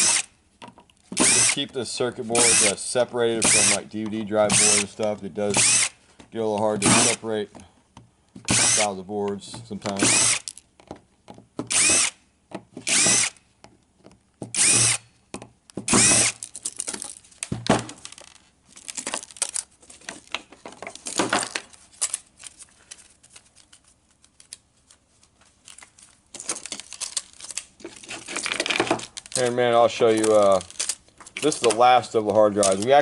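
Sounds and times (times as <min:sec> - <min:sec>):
power drill unscrewing screws: 0:00.0 - 0:00.3, 0:01.1 - 0:07.2, 0:08.4 - 0:09.0, 0:09.6 - 0:10.6, 0:11.7 - 0:12.2, 0:12.8 - 0:13.4, 0:14.5 - 0:15.1, 0:15.9 - 0:17.2, 0:26.4 - 0:33.0
loose parts clicking and rattling: 0:08.3 - 0:11.9, 0:12.5 - 0:24.6, 0:25.6 - 0:33.0.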